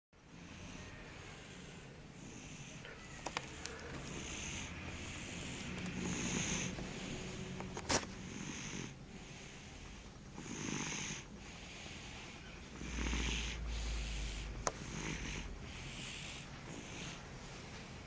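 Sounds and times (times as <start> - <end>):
baby snoring: 0.4 - 7.5, 8.2 - 9.6, 10.3 - 17.2.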